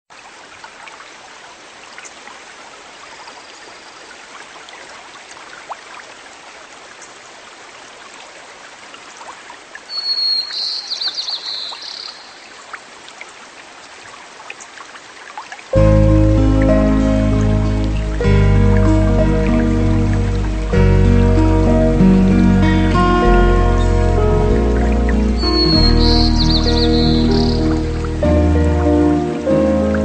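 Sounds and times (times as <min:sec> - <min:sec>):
stream water trickling: 0:00.1 - 0:30.0
bird trilled call: 0:09.9 - 0:12.5, 0:25.4 - 0:27.8.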